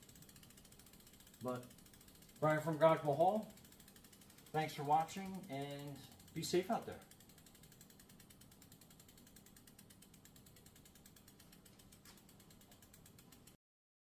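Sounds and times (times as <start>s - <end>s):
bicycle freewheel ticking: 0.0s - 13.6s.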